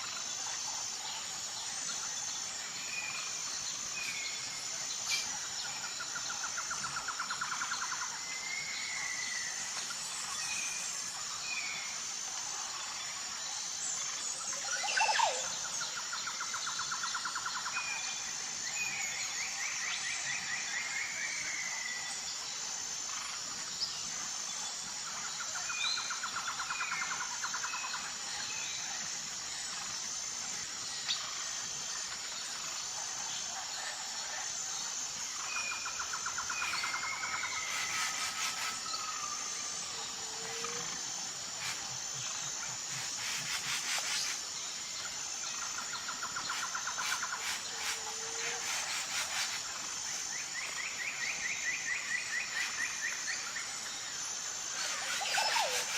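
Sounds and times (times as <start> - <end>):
pulsing insect chorus: 0.0 - 55.9
buzzy insect bursts: 36.5 - 44.5, 46.4 - 50.2, 54.7 - 55.9.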